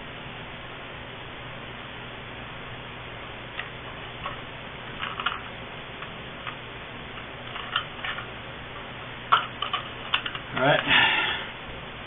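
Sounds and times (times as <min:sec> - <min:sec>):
steady background hiss: 0:00.0 - 0:12.0.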